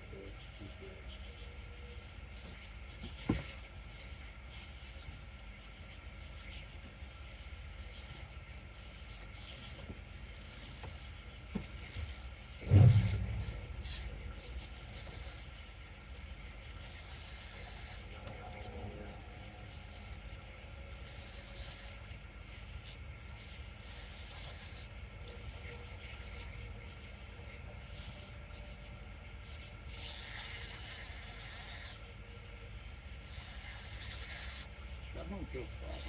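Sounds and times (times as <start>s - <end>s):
crickets chirping: 0.0s - 36.0s
low background rumble: 11.1s - 16.5s
loud dull thump: 12.6s - 14.1s.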